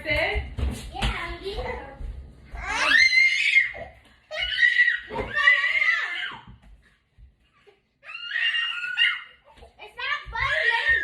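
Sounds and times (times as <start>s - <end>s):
child shrieking: 8.0s - 9.4s.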